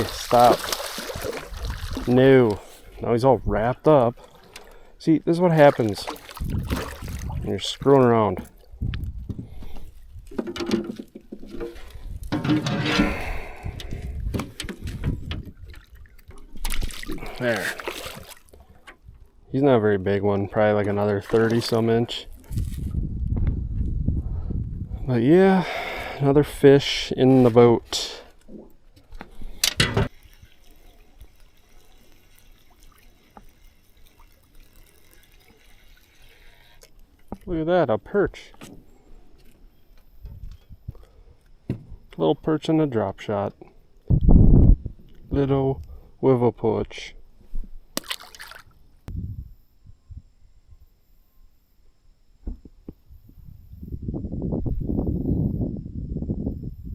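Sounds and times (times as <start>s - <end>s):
faint trickling river water: 0.0s - 22.9s, 26.2s - 44.1s, 45.0s - 49.1s.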